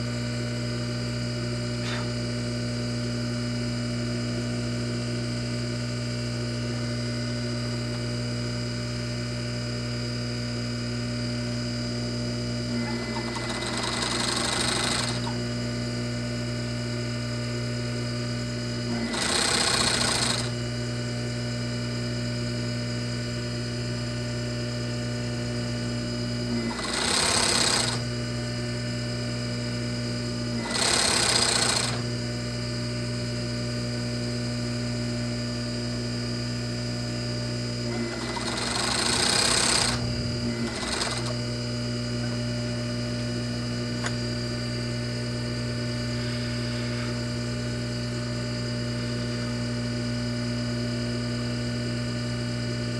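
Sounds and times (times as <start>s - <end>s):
sewing machine motor hum: 1.8s - 2.6s, 11.4s - 21.0s, 25.2s - 32.8s, 35.5s - 50.2s
sewing machine rapid stitching: 12.7s - 15.4s, 18.8s - 20.6s, 26.5s - 28.1s, 30.5s - 32.1s, 37.9s - 41.4s.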